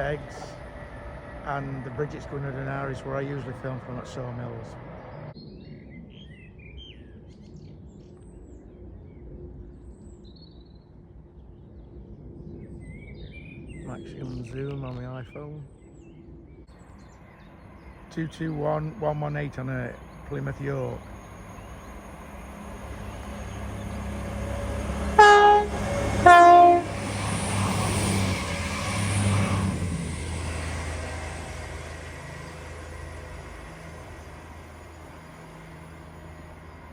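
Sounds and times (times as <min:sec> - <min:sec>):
low outdoor rumble: 0:00.0 - 0:06.0, 0:11.0 - 0:36.9
small birds chirping: 0:12.5 - 0:26.2
train two-tone horn: 0:23.3 - 0:29.8.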